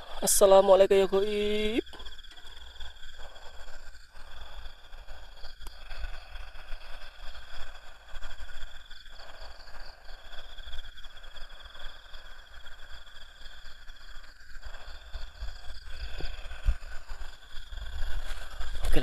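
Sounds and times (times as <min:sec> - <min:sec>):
night insects trilling: 0:00.0 - 0:19.0.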